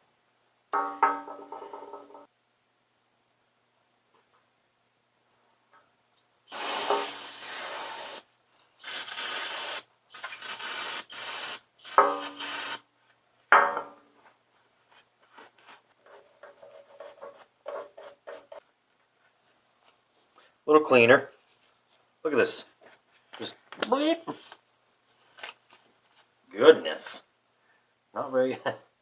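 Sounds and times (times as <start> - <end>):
cleaning spray hissing: 6.5 - 12.8.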